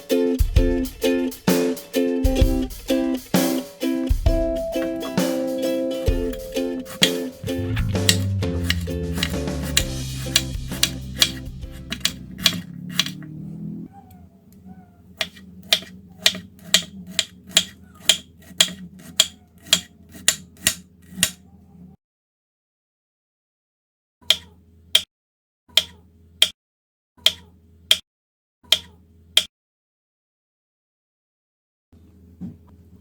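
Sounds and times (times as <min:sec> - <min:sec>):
knife chopping on cutting board: 0:06.9 - 0:13.2, 0:15.2 - 0:21.4.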